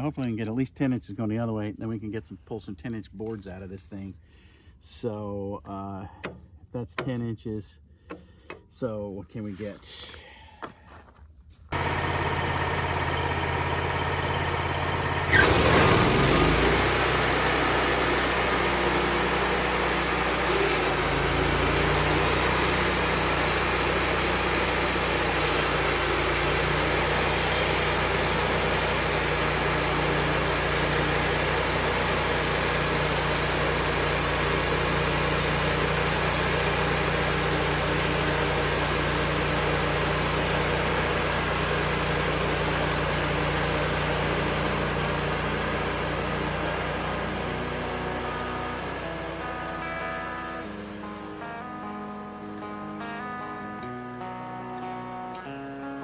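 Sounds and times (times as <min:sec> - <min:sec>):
sawmill engine running and revving: 0:11.7 - 0:54.7.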